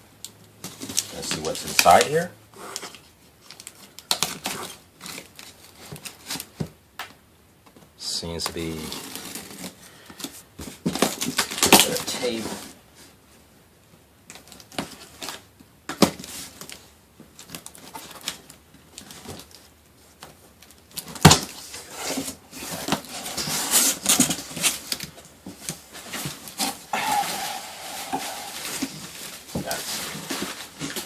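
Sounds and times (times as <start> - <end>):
newspaper rustling and crinkling: 14.3 - 31.0.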